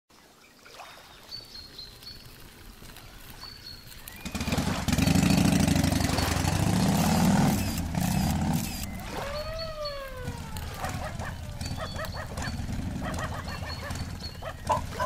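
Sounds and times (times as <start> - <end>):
birds chirping: 0.1 - 15.0
motor engine rumbling: 3.9 - 15.0.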